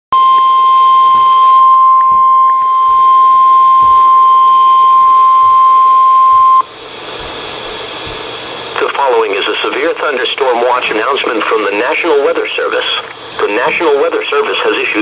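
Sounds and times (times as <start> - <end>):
radio hiss: 6.4 - 15.0.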